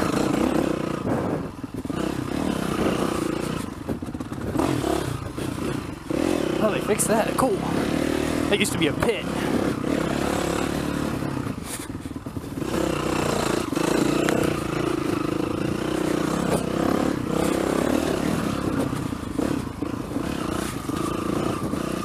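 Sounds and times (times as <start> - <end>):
dirt bike engine revving: 0.0 - 22.0.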